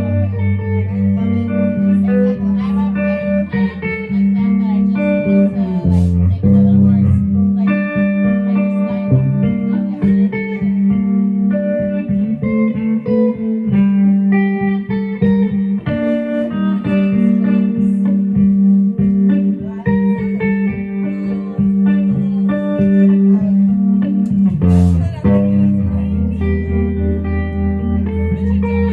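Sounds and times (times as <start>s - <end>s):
low bass tone: 0.0s - 28.9s
plucked guitar notes: 0.0s - 28.9s.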